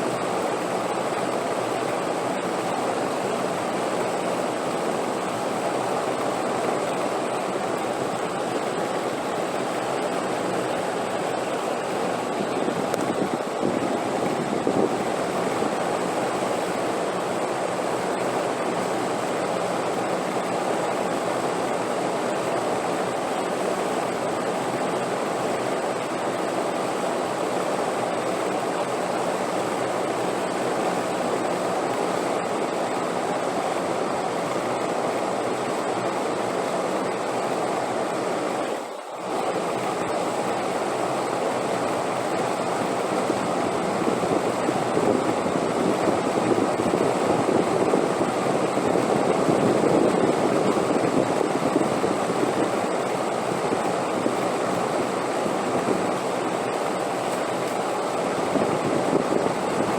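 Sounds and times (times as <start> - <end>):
rushing wind: 8.8 - 18.2, 41.8 - 59.9.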